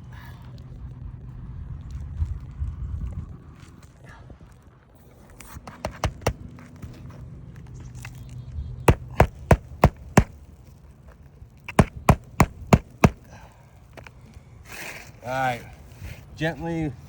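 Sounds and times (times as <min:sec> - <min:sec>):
hammer driving roofing nails: 0:05.7 - 0:06.4, 0:08.9 - 0:10.4, 0:11.7 - 0:13.4.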